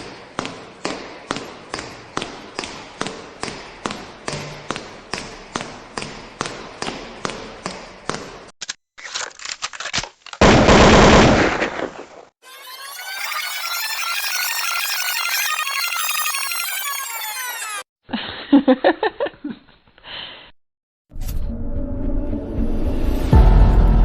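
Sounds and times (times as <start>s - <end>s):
gunfire: 10.4s - 12.2s
music: 21.2s - 24.0s.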